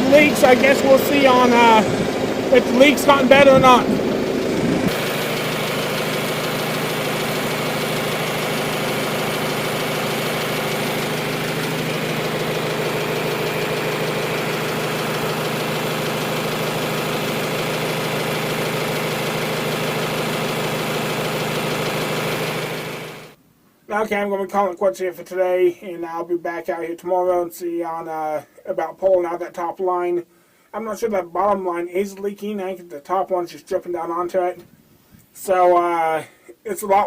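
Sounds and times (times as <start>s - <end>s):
engine idling: 0.0s - 23.4s.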